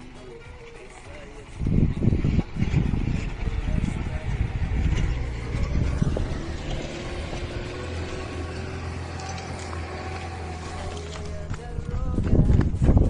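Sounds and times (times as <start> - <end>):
heavy machine engine rumbling: 0.0 - 12.5
faint rising whine: 1.6 - 11.4.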